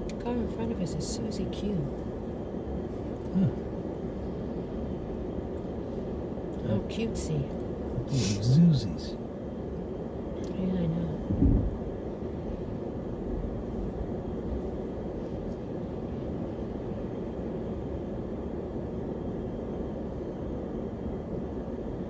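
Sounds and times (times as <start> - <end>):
car road and engine rumble: 0.0 - 22.0
low thump: 11.3 - 11.8.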